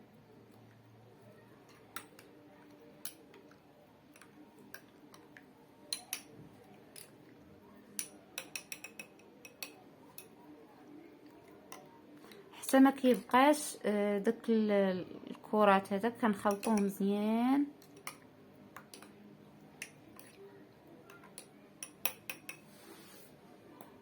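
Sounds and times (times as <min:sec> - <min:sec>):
spoon clinking against glass: 0:08.0 - 0:10.3.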